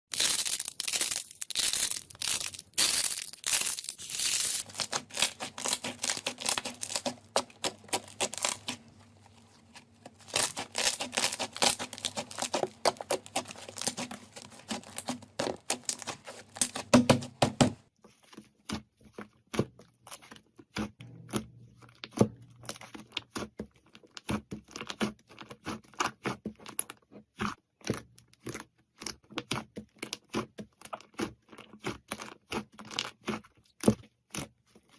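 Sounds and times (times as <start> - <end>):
slime crackling and popping: 0.1 - 8.9, 10.1 - 17.1.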